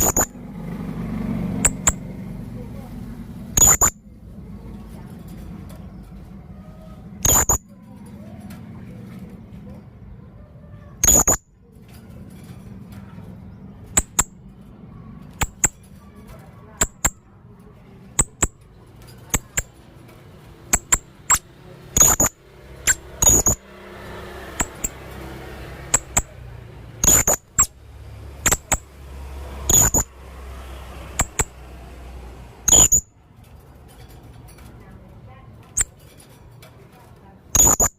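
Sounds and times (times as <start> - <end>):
parrot high-pitched chirps: 0.0 - 0.4, 3.5 - 4.0, 7.1 - 7.7, 10.9 - 11.5, 15.2 - 15.9, 20.7 - 23.7, 24.5 - 25.1, 25.9 - 27.8, 28.4 - 28.9, 29.6 - 30.1, 31.1 - 31.6, 32.6 - 33.1, 35.7 - 36.0, 37.5 - 37.9.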